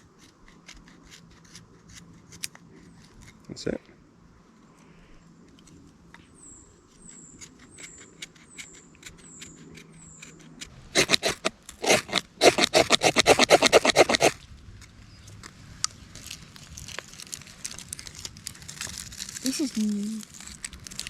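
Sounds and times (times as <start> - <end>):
knife scraping wood shavings: 10.9 - 14.4.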